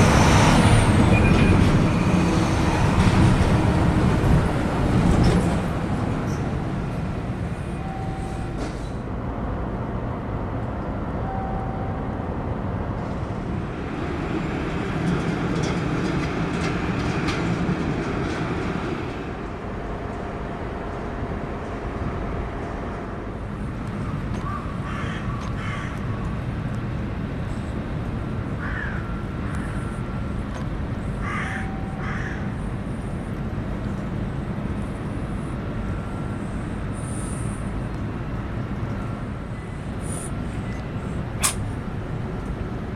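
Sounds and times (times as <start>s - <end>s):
crows cawing: 24.4s - 26.0s, 28.6s - 29.7s, 31.2s - 32.5s.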